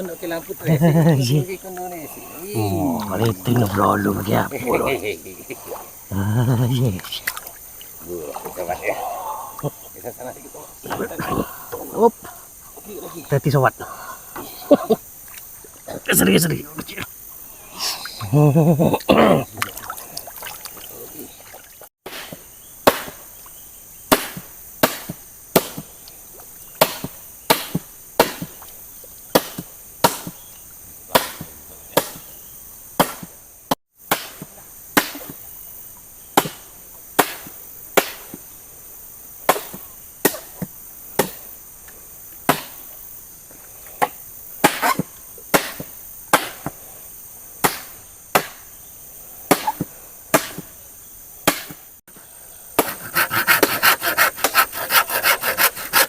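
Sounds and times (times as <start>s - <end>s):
high-pitched background hiss: 0.0s - 56.0s
wood chopping: 22.1s - 23.2s, 24.1s - 25.9s, 26.8s - 28.6s, 29.3s - 30.4s, 31.1s - 32.3s, 33.0s - 33.4s, 34.1s - 35.4s, 36.4s - 36.6s, 37.2s - 38.4s, 39.5s - 41.4s, 42.5s - 42.8s, 44.0s - 46.8s, 47.6s - 48.6s, 49.5s - 50.7s, 51.4s - 51.8s, 52.8s - 56.0s.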